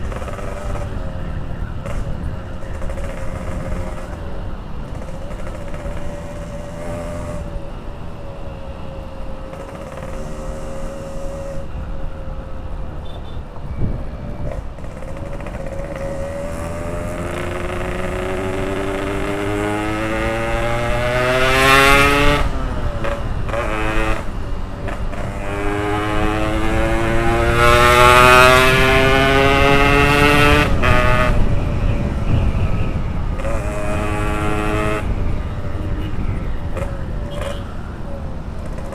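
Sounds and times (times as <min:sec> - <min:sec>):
motorcycle engine revving: 0:00.0 - 0:38.9
wind rumble on microphone: 0:13.6 - 0:38.9.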